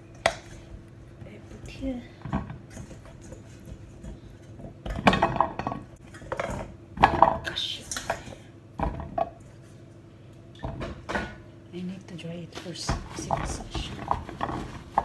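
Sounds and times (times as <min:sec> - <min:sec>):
kitchen utensils and dishes clattering: 0:00.2 - 0:09.4, 0:12.6 - 0:15.0.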